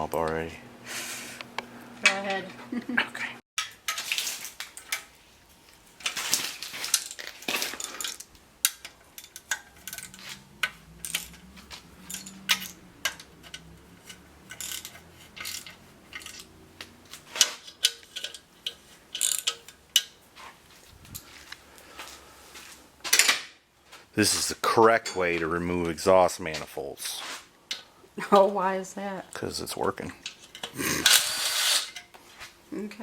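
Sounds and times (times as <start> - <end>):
hand ratchet clicking: 8.0 - 20.2, 30.3 - 32.0.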